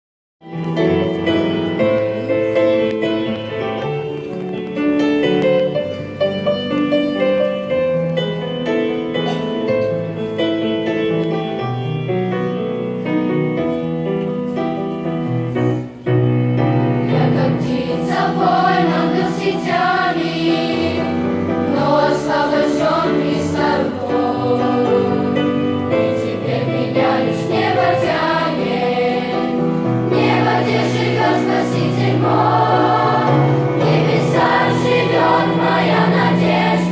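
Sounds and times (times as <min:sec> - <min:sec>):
instrumental accompaniment: 0:00.4 - 0:36.9
children's choir singing: 0:16.9 - 0:36.9.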